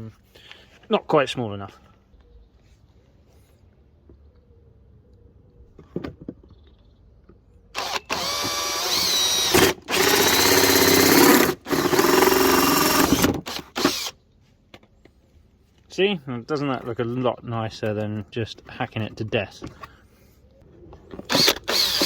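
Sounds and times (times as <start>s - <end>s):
power drill with hole saw: 7.8s - 14.2s, 21.2s - 22.0s.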